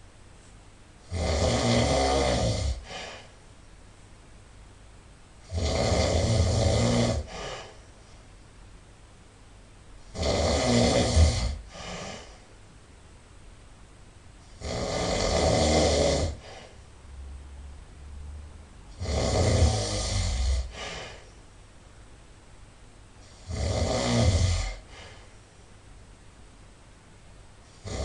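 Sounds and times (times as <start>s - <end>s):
person snoring loudly: 1.0s - 3.3s, 5.4s - 7.8s, 10.1s - 12.4s, 14.5s - 16.8s, 18.9s - 21.2s, 23.2s - 25.2s, 27.7s - 28.0s.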